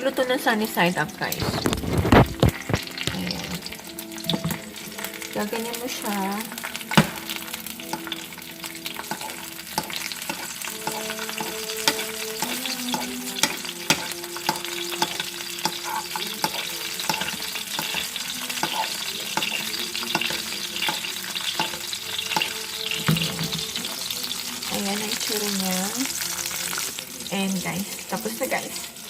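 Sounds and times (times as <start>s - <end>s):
egg sizzling in a pan: 0.0s - 29.0s
utensil scraping a pan: 1.3s - 4.6s, 6.7s - 25.2s.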